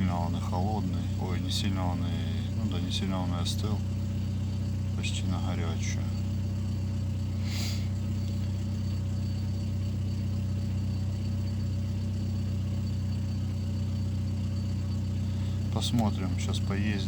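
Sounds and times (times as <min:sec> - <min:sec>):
car engine idling: 0:00.0 - 0:17.0
brief hiss: 0:07.4 - 0:07.9.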